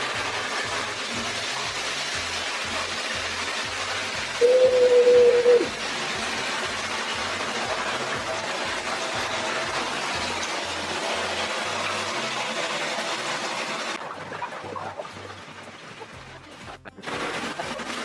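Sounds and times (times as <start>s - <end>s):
loud steady tone: 0.0s - 12.1s
tap water pouring into bathtub: 0.0s - 18.0s.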